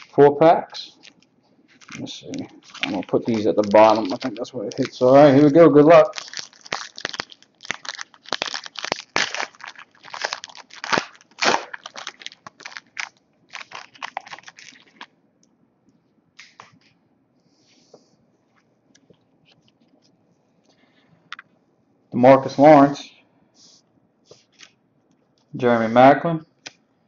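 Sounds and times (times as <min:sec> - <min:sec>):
cards rustling: 0:00.9 - 0:15.1
wrapper tearing and crinkling: 0:00.9 - 0:15.1.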